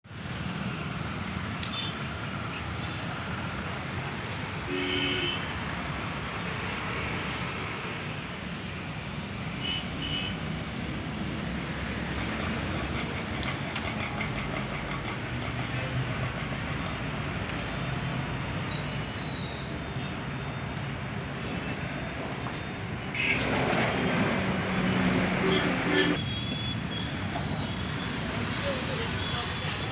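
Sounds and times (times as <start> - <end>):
road traffic noise: 0.0 - 29.9
car horn toot: 4.7 - 5.4, 23.1 - 23.6, 25.4 - 26.7.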